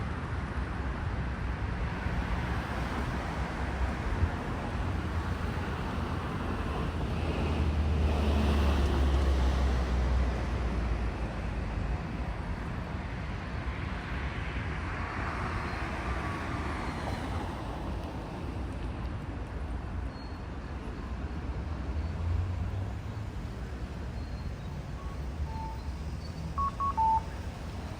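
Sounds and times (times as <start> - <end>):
freight train rumbling past: 22.9 - 27.9.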